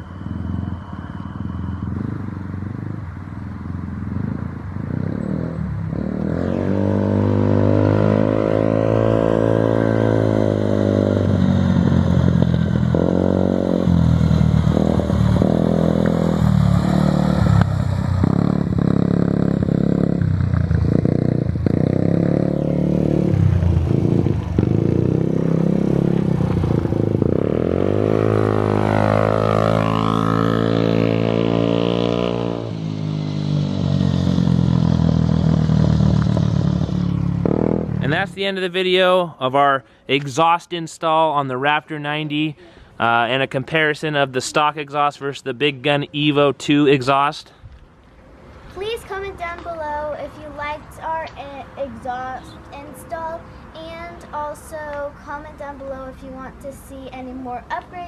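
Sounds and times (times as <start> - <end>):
small engine revving: 3.6 - 38.3.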